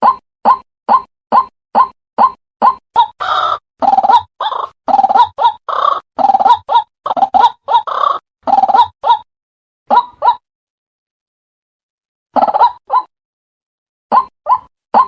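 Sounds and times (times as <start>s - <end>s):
waterhen croaking calls: 3.0s - 9.3s.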